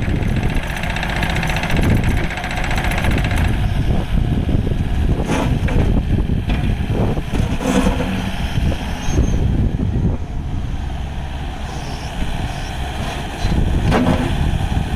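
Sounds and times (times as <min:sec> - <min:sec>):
excavator diesel engine running: 0:00.0 - 0:14.9
metal clanks and knocks: 0:05.2 - 0:08.2, 0:13.0 - 0:14.4.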